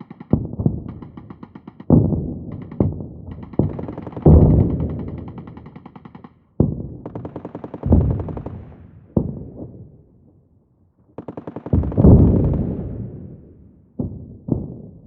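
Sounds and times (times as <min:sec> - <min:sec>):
automatic gunfire: 0:00.0 - 0:06.4, 0:07.0 - 0:08.8, 0:11.2 - 0:13.1
distant explosions booming: 0:01.9 - 0:05.3, 0:07.8 - 0:09.9, 0:11.7 - 0:15.0.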